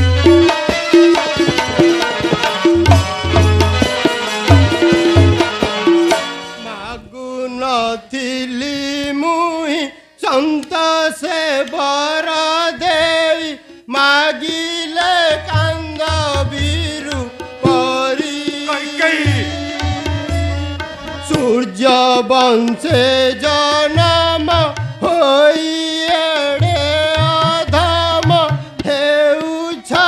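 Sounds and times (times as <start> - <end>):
tabla strokes: 0.0 - 6.4, 15.0 - 30.0
ornamented melody: 0.0 - 6.8, 17.4 - 22.6.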